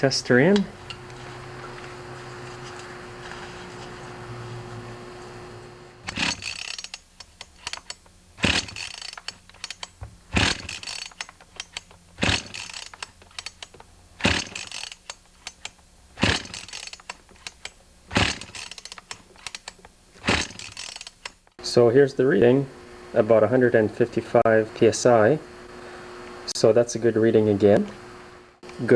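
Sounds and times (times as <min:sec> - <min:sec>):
chainsaw recoil starter pulls: 0:06.0 - 0:21.5
engine cranking against compression: 0:06.0 - 0:21.5.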